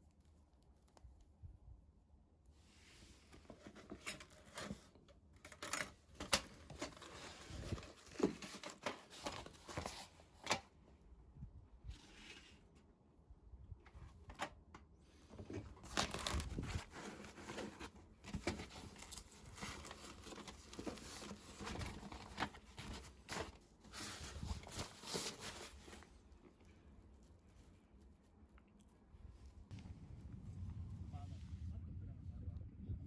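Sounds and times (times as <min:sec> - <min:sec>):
crinkling and rustling: 0:02.5 - 0:10.9, 0:13.8 - 0:30.7.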